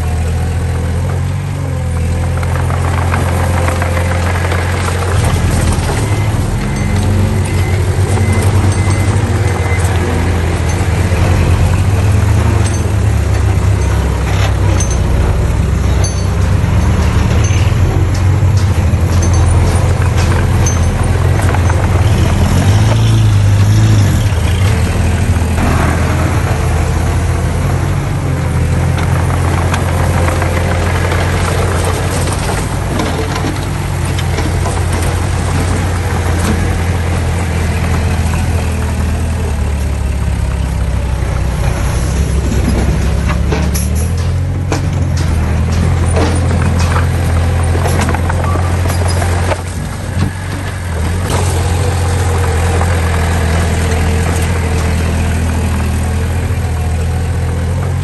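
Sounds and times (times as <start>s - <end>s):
heavy diesel engines running: 0.0s - 58.0s.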